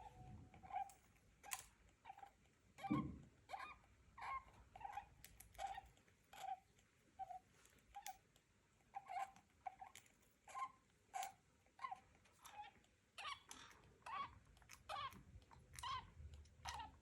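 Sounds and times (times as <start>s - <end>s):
parrot squeaking: 2.8s - 6.6s, 10.5s - 15.2s, 15.8s - 17.0s.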